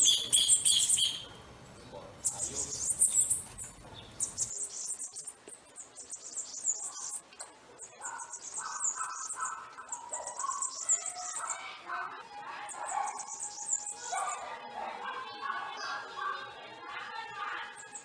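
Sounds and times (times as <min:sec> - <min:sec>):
bird whistled notes: 0:00.0 - 0:01.4
small birds chirping: 0:00.0 - 0:18.0.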